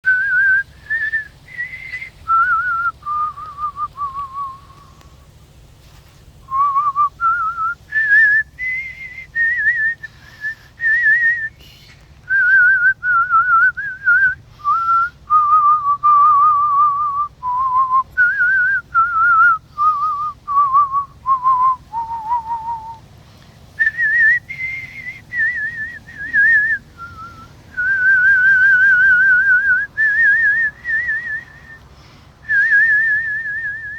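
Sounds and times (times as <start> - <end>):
person whistling a tune: 0.0 - 5.0, 6.5 - 11.7, 12.3 - 23.0, 23.8 - 31.8, 32.4 - 33.9.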